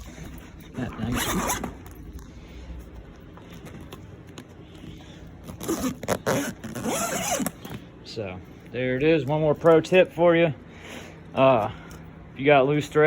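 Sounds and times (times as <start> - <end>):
zipper rasping along track: 0.0 - 2.0, 5.4 - 7.8.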